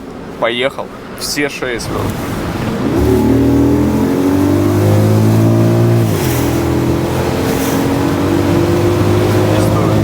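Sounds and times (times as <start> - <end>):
car engine accelerating: 1.8 - 10.0.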